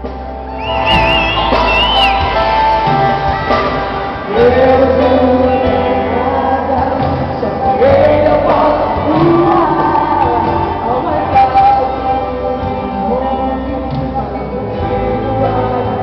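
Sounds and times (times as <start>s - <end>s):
live band playing: 0.0s - 16.0s
person singing long notes: 4.2s - 16.0s.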